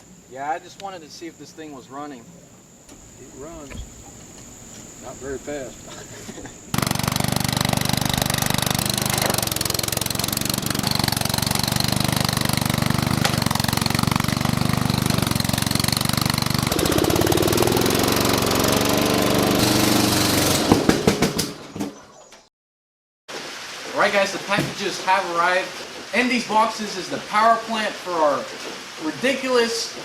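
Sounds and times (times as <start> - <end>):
lawn mower engine running: 5.5 - 21.6.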